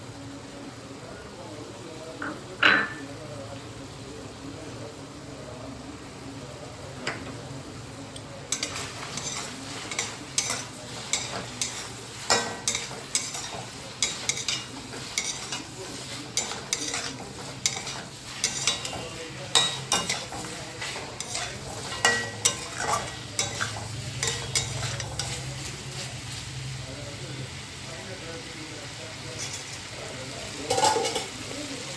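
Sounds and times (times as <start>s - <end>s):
chicken sizzling in a pan: 3.0s - 31.9s
spoon stirring and scraping pan: 8.1s - 26.4s, 29.4s - 31.8s.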